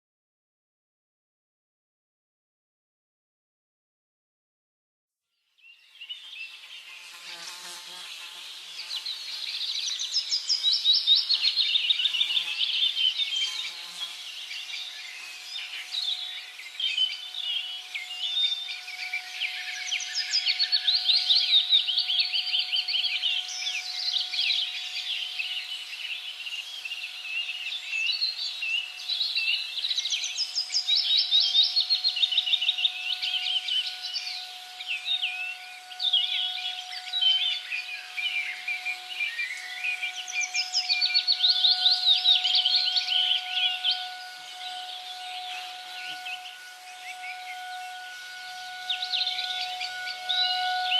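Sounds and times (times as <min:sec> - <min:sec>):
small birds chirping and singing: 0:05.6 - 0:50.9
faint steady tone: 0:28.8 - 0:50.9.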